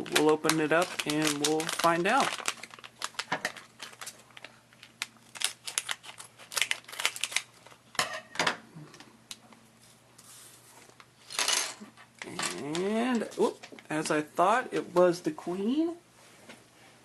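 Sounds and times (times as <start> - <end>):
plastic bag crinkling and tearing: 0.0 - 8.0.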